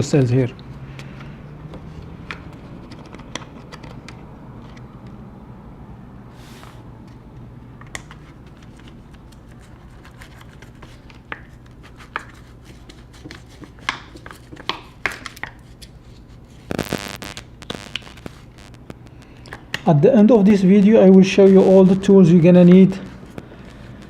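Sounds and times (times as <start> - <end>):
steady low hum: 16.0 - 24.0.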